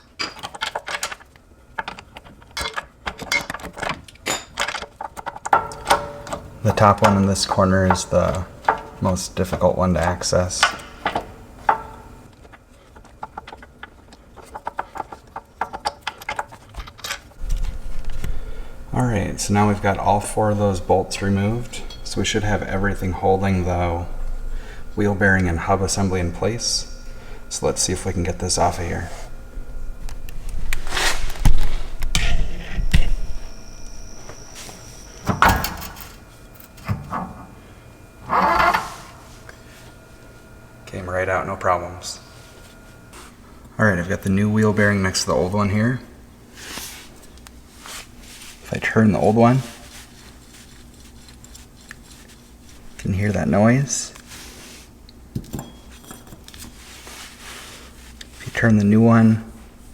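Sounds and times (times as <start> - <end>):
metal knocks and clunks: 5.5 - 9.7, 10.6 - 12.2, 17.4 - 37.6
metal scraping: 5.6 - 9.5, 17.4 - 41.1
light metal clinks: 17.4 - 36.7.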